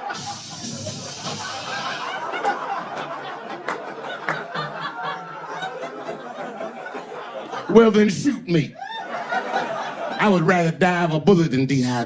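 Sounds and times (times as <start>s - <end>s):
audience laughing: 0.0s - 11.1s
scattered clapping: 2.4s - 4.7s.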